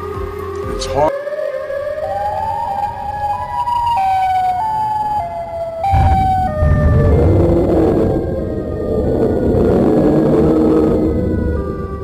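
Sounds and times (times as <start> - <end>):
wavering wail: 1.2 - 12.0
siren-like electronic tone: 1.8 - 12.0
loud low rumble: 5.9 - 9.9.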